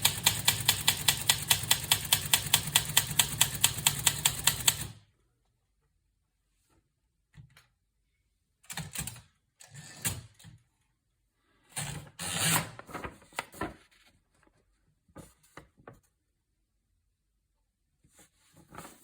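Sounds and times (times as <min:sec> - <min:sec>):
rubbing and scraping handling noises: 0:12.7 - 0:16.1, 0:18.0 - 0:19.0.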